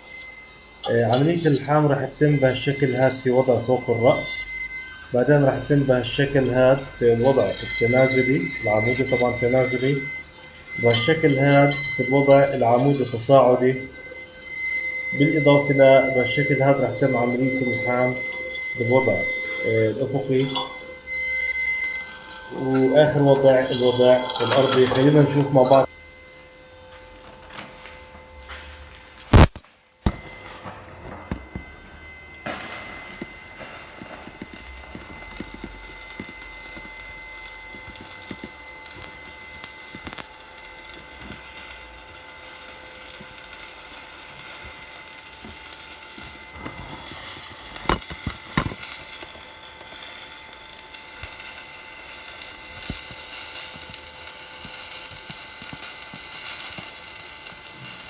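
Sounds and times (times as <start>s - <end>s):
welding arc crackling: 0.0s - 13.3s, 19.6s - 25.6s, 29.2s - 58.0s
faint steady whine: 0.0s - 58.0s
sharp click: 29.3s - 30.2s.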